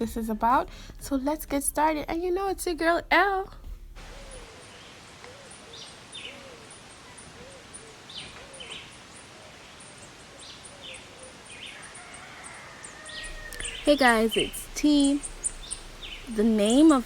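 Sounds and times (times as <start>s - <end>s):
birds chirping: 4.0s - 17.0s
soft low bird calls: 4.0s - 17.0s
fine high ticking: 13.2s - 17.0s.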